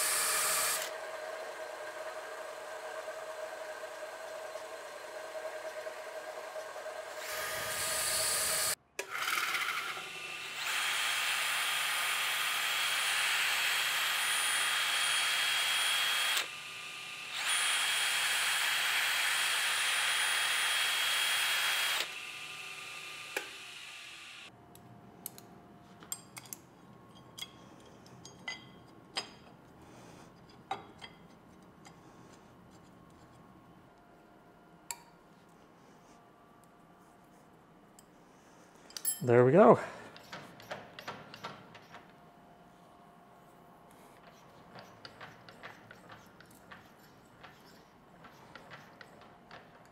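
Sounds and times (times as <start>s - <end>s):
milling machine cutting: 9.7s - 24.4s
metallic clicks of tools: 25.2s - 28.6s, 38.9s - 39.3s.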